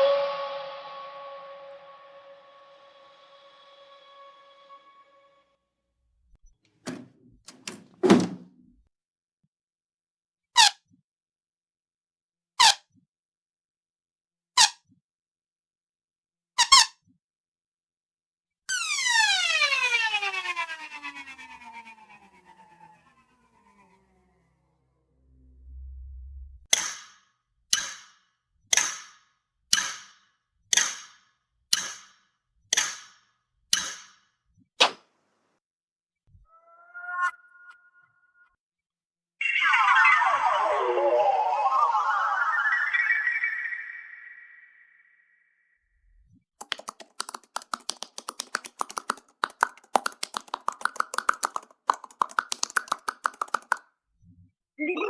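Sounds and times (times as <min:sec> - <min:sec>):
sharp clicks: 0:46.6 - 0:53.8.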